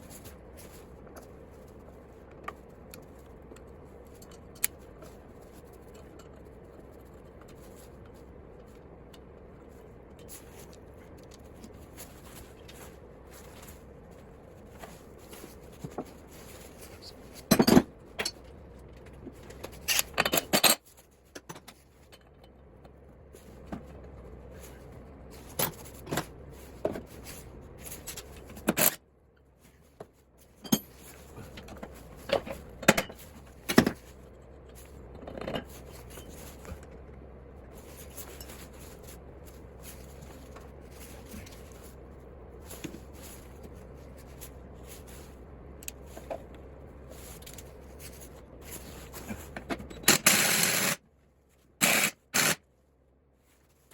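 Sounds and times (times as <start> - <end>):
steady low hum: 0.0 - 53.9
metal engine parts clinking: 19.7 - 22.6.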